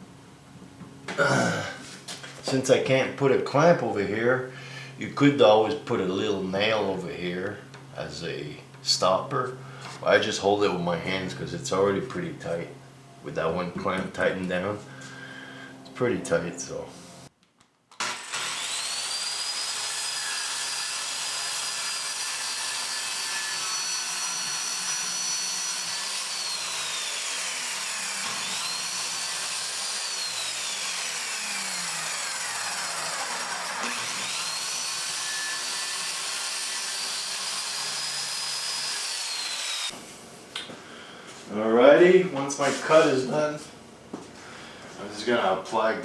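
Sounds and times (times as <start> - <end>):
circular saw cutting plywood: 18.0 - 40.0.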